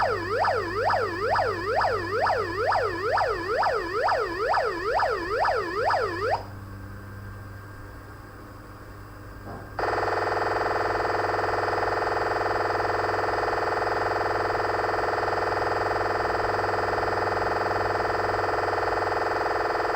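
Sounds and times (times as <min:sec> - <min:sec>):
electronic siren sweeping: 0:00.0 - 0:06.5
low hum: 0:00.0 - 0:07.9.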